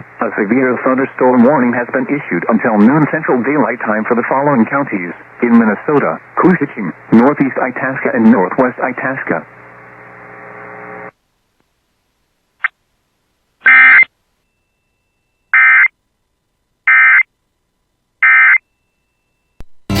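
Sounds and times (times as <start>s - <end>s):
radio hiss: 0.0s - 11.2s.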